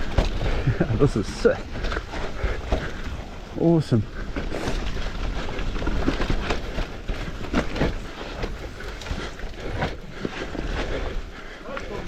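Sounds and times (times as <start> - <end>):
tyres rumbling over dirt and roots: 0.0 - 12.0.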